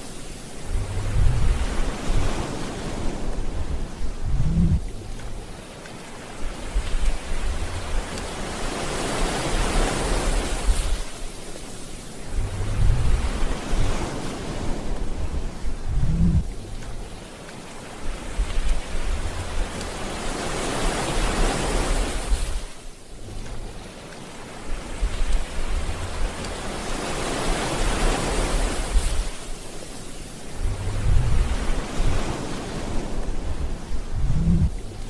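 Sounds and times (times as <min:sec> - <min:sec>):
water rushing: 0:00.0 - 0:35.0
low rumbles: 0:00.6 - 0:05.6, 0:06.6 - 0:08.3, 0:12.2 - 0:17.2, 0:30.6 - 0:32.3, 0:32.9 - 0:35.0.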